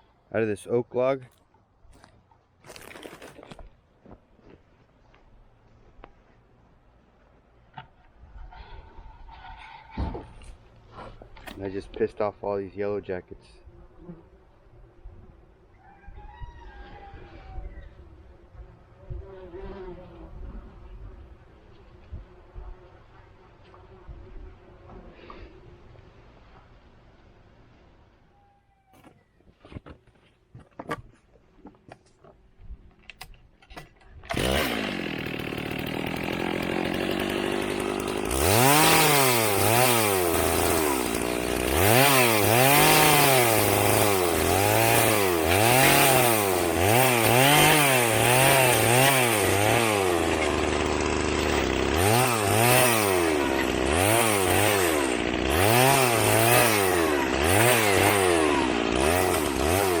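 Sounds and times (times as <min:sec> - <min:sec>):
chainsaw revving cutting log: 0:34.3 - 1:00.0.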